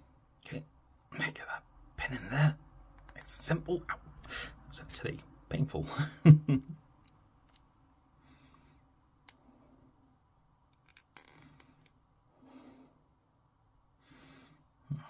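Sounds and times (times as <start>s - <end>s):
clicks of small plastic parts: 10.7s - 12.0s.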